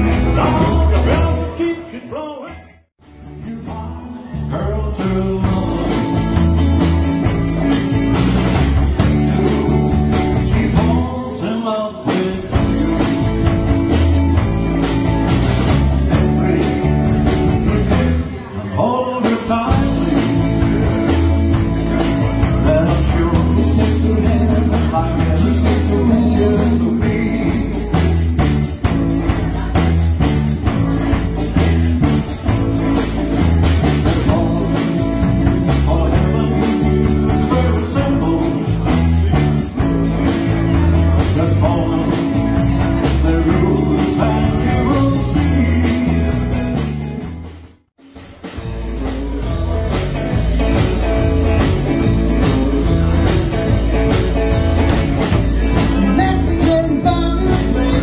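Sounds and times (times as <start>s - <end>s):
rock and roll band music: 0.0s - 58.0s.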